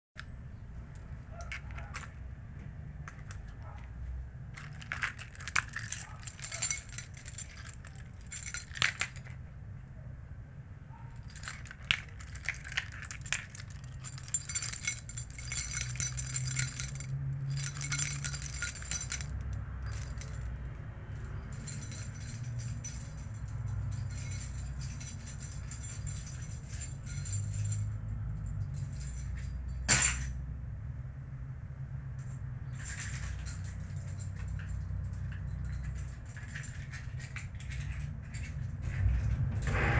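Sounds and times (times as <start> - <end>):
keys jangling: 4.5 - 9.4, 11.1 - 30.4, 32.2 - 39.8.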